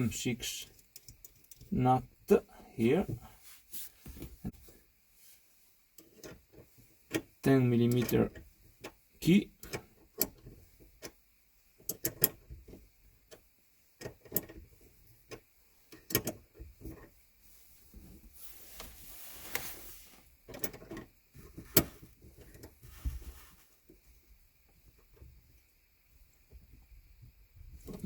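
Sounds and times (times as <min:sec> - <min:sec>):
rustling hiss: 0:14.6 - 0:26.8.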